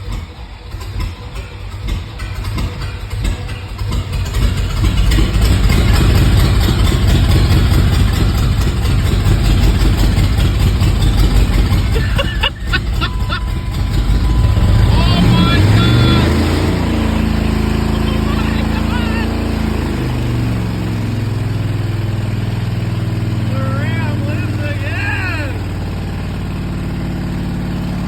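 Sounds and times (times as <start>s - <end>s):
pickup engine running hard: 0.0s - 28.0s.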